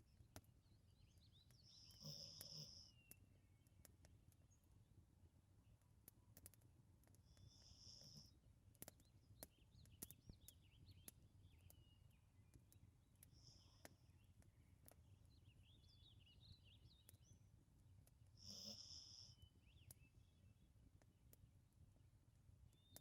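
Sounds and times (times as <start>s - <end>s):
dog snoring: 1.9s - 2.9s, 18.4s - 19.2s.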